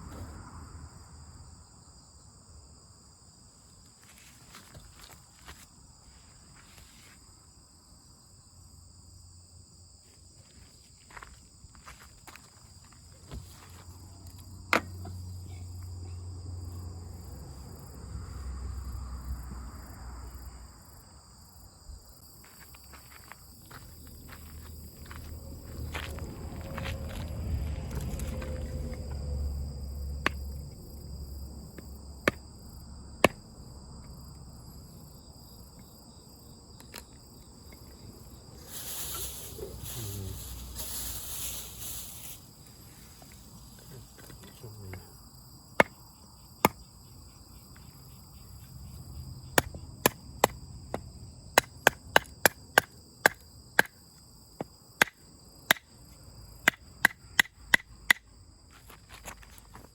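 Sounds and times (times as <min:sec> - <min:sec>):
insects trilling: 0:00.0 - 0:59.9
rustling: 0:38.5 - 0:44.5
wood chopping knocks: 0:45.8 - 0:46.0, 0:49.6 - 0:54.0.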